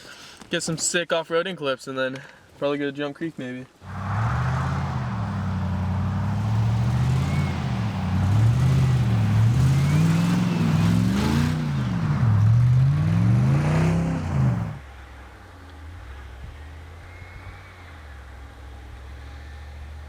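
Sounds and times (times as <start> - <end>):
vehicle engine revving: 3.8 - 14.8.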